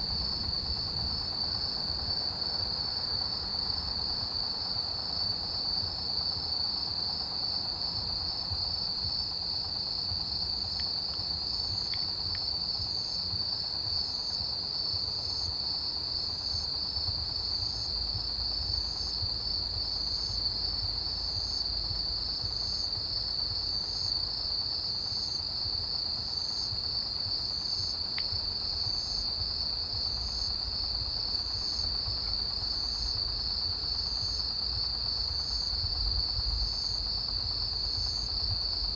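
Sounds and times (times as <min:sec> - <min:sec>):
insect chirps: 0:00.0 - 0:38.9.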